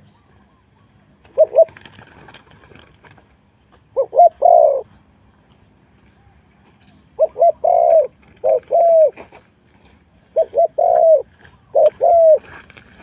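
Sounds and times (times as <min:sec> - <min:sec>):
dove cooing: 0:00.0 - 0:02.8, 0:03.9 - 0:05.1, 0:06.2 - 0:09.4, 0:10.2 - 0:12.7.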